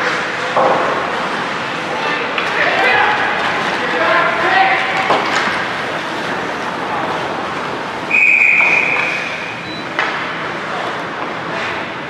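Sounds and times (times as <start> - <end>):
spectators chattering: 0.0 - 12.0
referee's whistle: 8.1 - 9.8.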